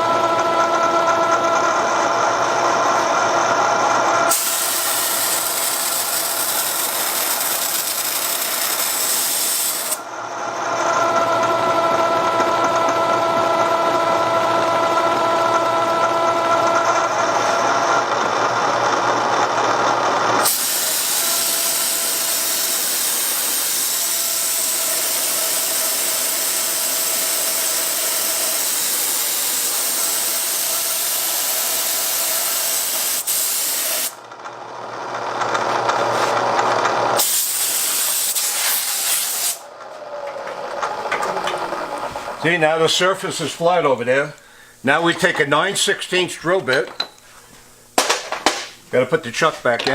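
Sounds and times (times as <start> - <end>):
milling machine cutting metal: 0.1 - 34.2.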